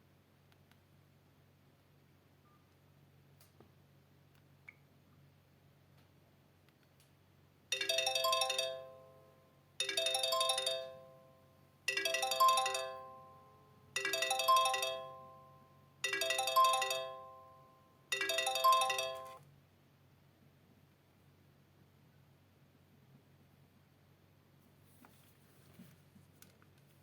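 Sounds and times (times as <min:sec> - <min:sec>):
phone ringtone: 0:07.7 - 0:19.4.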